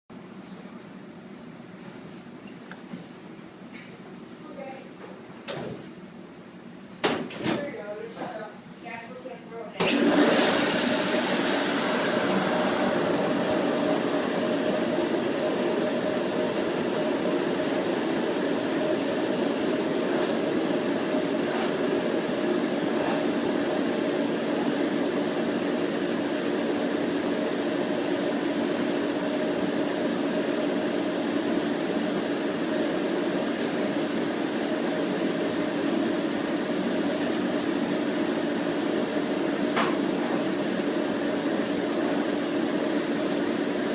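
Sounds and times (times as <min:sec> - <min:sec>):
high steady whine: 0:10.0 - 0:43.9.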